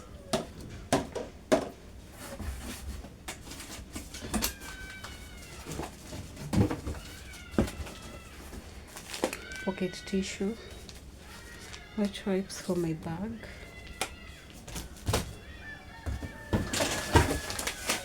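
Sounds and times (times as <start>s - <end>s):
plastic packets clicking and knocking: 0.3s - 12.3s, 13.4s - 18.0s.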